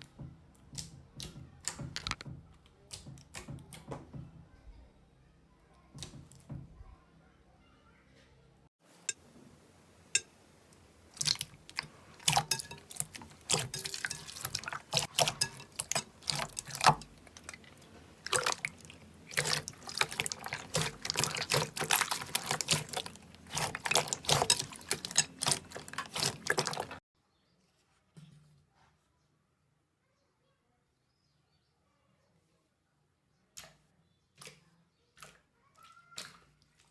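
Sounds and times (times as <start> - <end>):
slime squelching and popping: 11.1 - 27.0.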